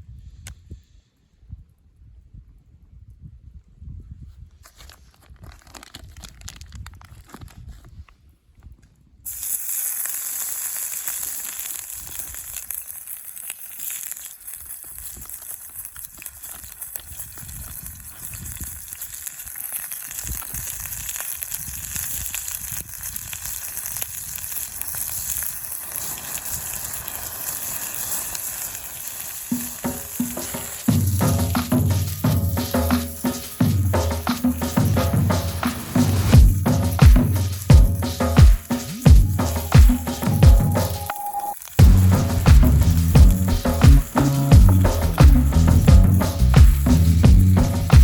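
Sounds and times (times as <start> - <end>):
food sizzling in a frying pan: 9.3 - 48.0
rhythmic music with drums: 29.5 - 48.0.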